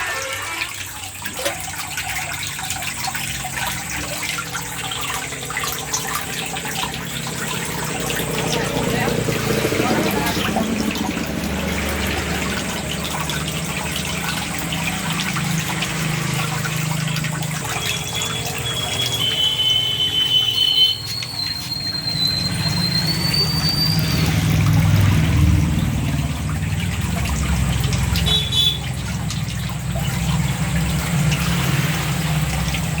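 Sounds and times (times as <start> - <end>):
water running and splashing: 0.0 - 33.0
high whistling tones: 17.7 - 24.5.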